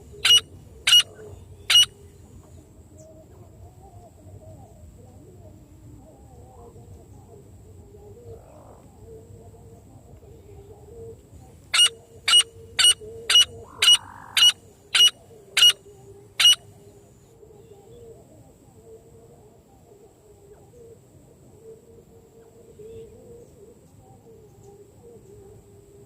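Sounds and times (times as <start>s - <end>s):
francolin shrill calls: 0.1s - 2.0s, 11.7s - 15.8s, 16.4s - 16.6s.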